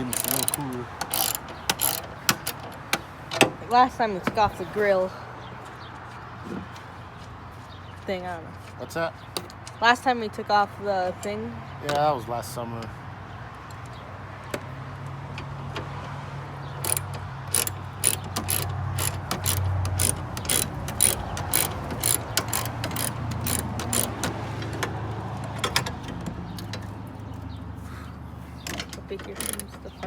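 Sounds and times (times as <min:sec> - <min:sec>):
ratchet wrench clicking: 0:00.0 - 0:02.7, 0:16.8 - 0:24.8, 0:29.2 - 0:30.0.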